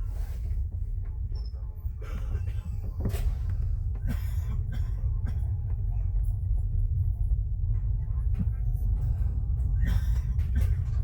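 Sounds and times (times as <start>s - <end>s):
train carriage rumble: 0.0s - 11.0s.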